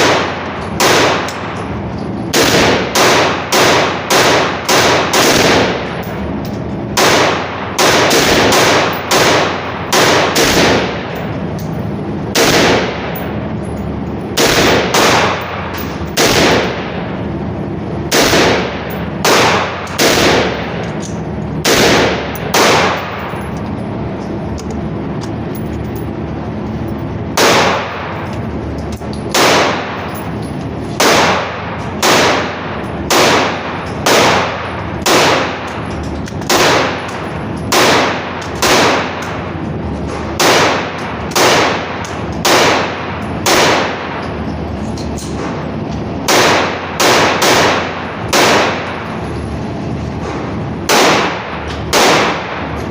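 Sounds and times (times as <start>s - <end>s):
gunshots: 0.0s - 1.6s, 2.3s - 6.0s, 6.9s - 11.2s, 12.3s - 13.4s, 14.3s - 17.0s, 18.1s - 20.8s, 21.6s - 23.4s, 27.3s - 28.2s, 29.3s - 30.3s, 30.9s - 35.8s, 36.4s - 39.4s, 40.1s - 44.2s, 45.4s - 49.1s, 50.2s - 52.9s.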